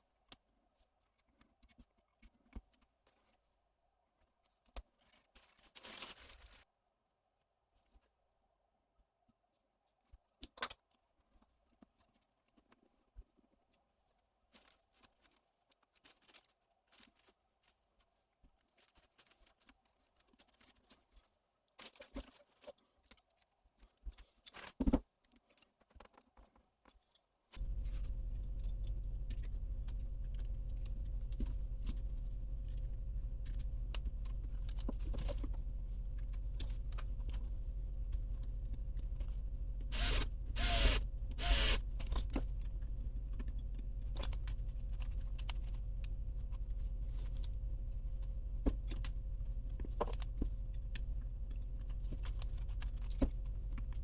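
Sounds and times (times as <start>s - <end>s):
small metal parts clicking: 27.1s - 54.0s
low machine hum: 27.6s - 54.0s.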